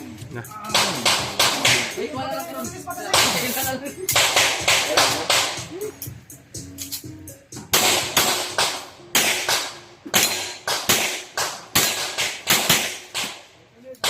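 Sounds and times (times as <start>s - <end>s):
gunshots echoing: 0.7s - 2.0s, 4.1s - 5.7s, 7.7s - 13.6s.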